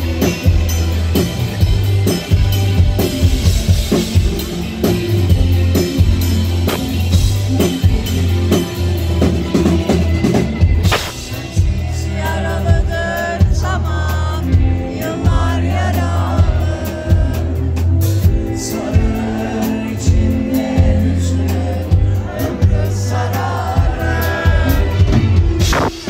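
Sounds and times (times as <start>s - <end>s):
live rock band playing: 0.0s - 26.0s
cymbal crash: 10.9s - 11.4s
person singing: 11.2s - 25.2s.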